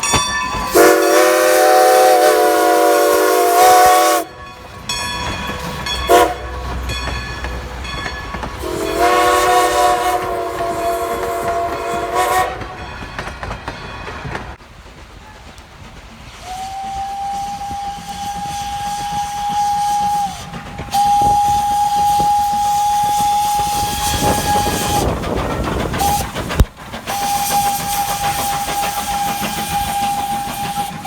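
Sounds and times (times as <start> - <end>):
steam locomotive chord whistle: 0.0 - 7.5, 8.6 - 12.9, 16.4 - 25.1, 27.1 - 31.0.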